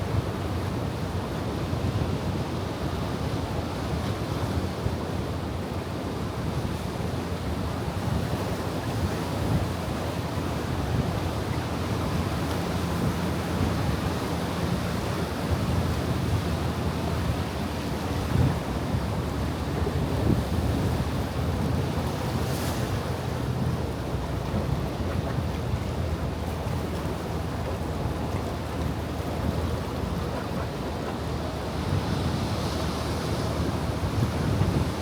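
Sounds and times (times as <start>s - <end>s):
ocean surf washing on shore: 7.0s - 35.0s
wind buffeting microphone: 31.2s - 35.0s.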